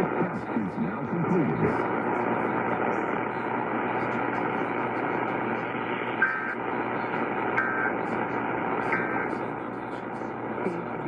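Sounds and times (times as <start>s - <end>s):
radio static hiss: 0.0s - 11.0s
two-tone data burst: 6.2s - 6.6s, 7.6s - 8.1s, 8.8s - 9.3s.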